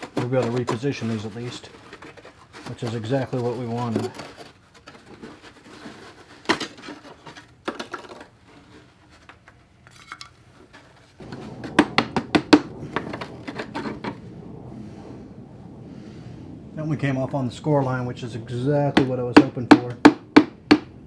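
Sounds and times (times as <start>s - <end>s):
scraping: 0.0s - 21.0s.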